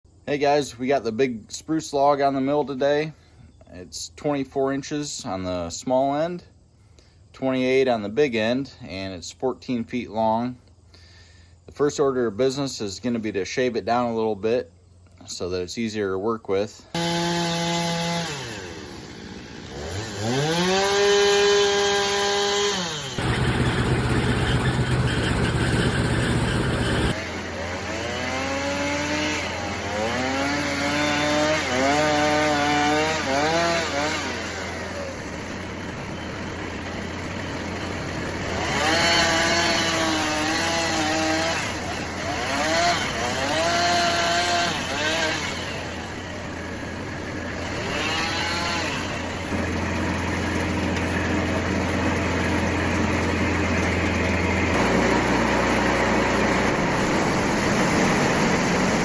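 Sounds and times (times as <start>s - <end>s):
engine droning: 16.9s - 59.0s
saw engine revving: 16.9s - 59.0s.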